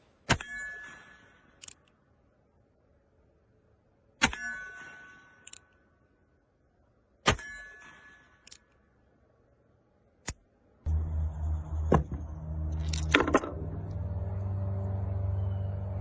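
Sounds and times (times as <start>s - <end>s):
sharp metallic clangs: 0.2s - 1.8s, 4.2s - 5.9s, 7.2s - 8.8s.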